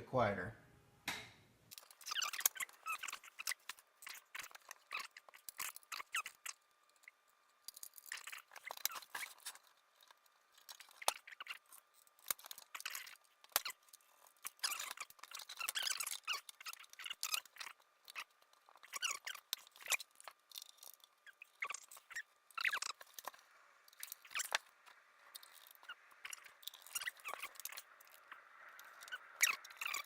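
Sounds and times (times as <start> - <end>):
squeaky scraping rubs: 1.8 - 30.0.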